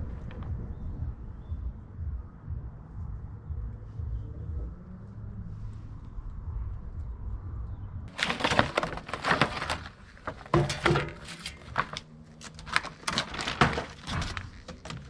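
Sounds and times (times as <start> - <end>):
low rumble: 0.0 - 10.4
packaging clicking and crackling: 8.1 - 15.0.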